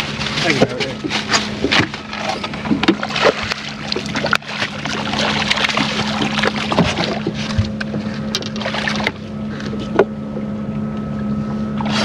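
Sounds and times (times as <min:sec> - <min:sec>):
boat motor humming: 0:00.0 - 0:12.0
water splashing: 0:01.7 - 0:07.8, 0:08.4 - 0:09.3.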